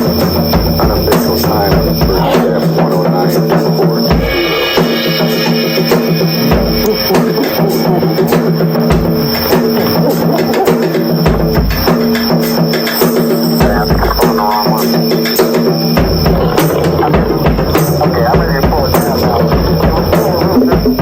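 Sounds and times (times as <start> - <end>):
drum kit solo: 0.0 - 21.0
steady droning tone: 16.0 - 21.0.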